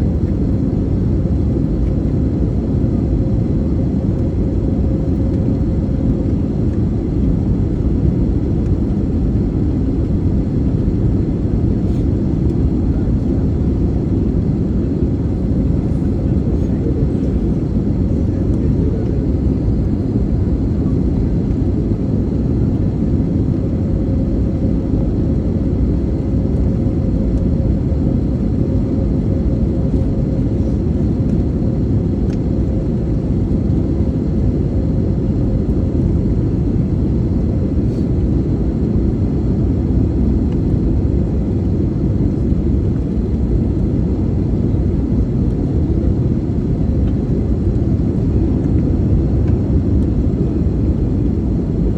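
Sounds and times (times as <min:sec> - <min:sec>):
airliner cabin engine rumble: 0:00.0 - 0:51.9.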